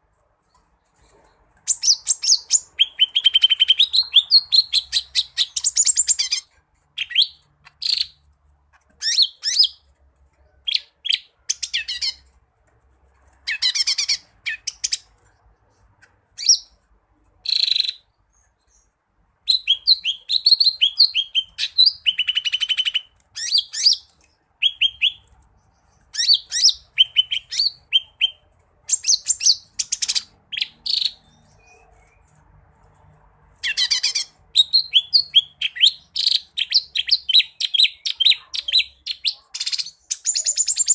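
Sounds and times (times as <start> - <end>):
bird singing rapid chirps: 1.6 - 8.2, 9.0 - 9.9, 10.5 - 12.3, 17.4 - 32.4, 33.6 - 40.9.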